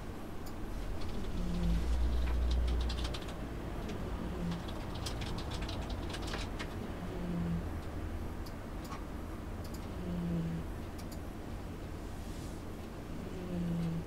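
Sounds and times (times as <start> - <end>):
cat snoring: 10.0 - 10.6.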